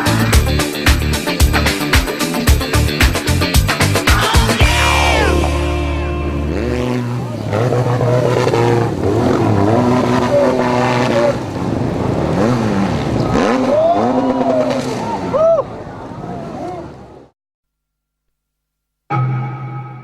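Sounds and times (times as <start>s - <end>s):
motorcycle engines revving: 0.0s - 17.3s.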